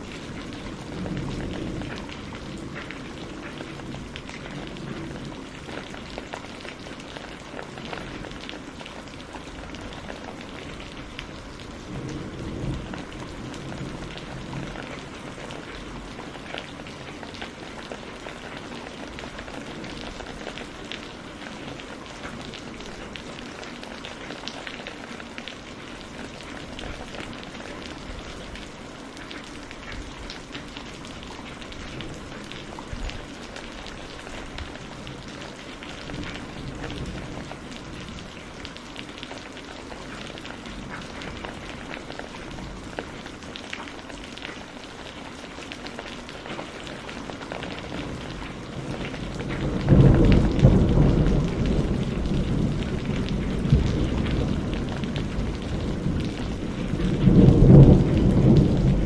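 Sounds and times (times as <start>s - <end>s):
heavy rain falling: 0.0s - 59.0s
distant thunder rumbling: 10.5s - 16.8s, 47.9s - 59.0s.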